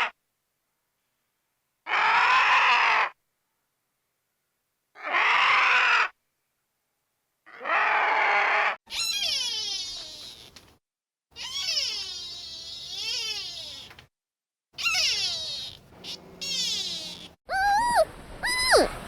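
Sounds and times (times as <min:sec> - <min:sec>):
harsh noisy animal call: 0:01.9 - 0:03.1, 0:07.5 - 0:10.6, 0:11.4 - 0:14.0, 0:14.8 - 0:19.0
wailing animal calls: 0:07.6 - 0:10.6, 0:11.4 - 0:14.0, 0:14.8 - 0:19.0.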